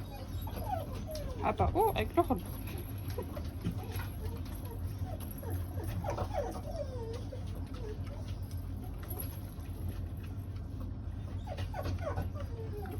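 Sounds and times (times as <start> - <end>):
dog whining: 0.0 - 2.0, 3.2 - 9.4, 11.2 - 12.9
steady low hum: 0.0 - 12.9.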